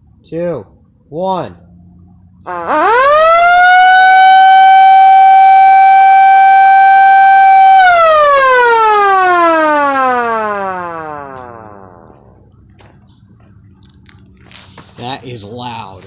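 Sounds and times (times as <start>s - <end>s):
mini siren wailing: 1.9s - 12.4s.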